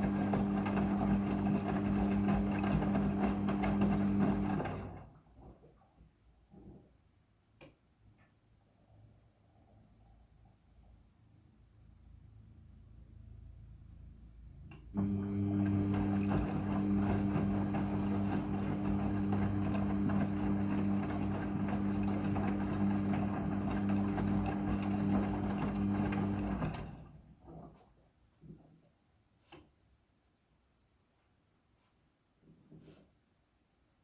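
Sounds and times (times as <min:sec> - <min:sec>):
washing machine hum: 0:00.0 - 0:05.7, 0:14.5 - 0:28.7.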